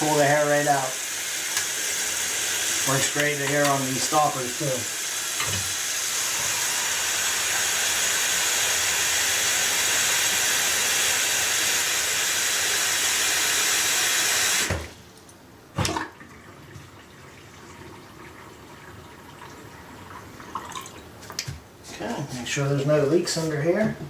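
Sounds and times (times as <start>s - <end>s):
faucet running into sink: 0.0s - 14.9s.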